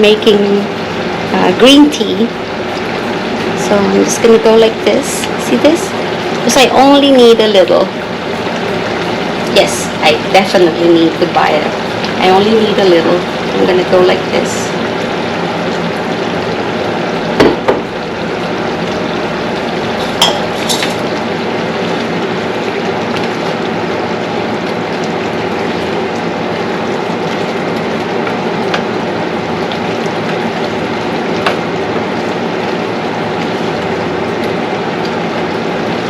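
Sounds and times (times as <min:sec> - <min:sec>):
stew bubbling and simmering: 0:00.1 - 0:36.0
utensil clinking against pot: 0:20.0 - 0:21.0.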